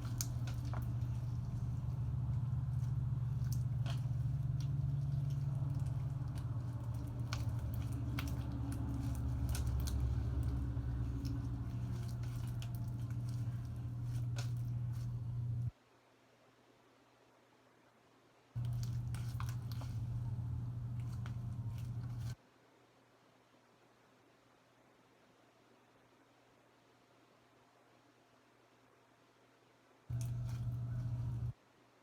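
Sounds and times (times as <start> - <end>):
slime squelching: 0.0 - 15.7, 18.6 - 22.4, 30.1 - 31.5
steady low hum: 0.0 - 15.8, 18.6 - 22.4, 30.1 - 31.6.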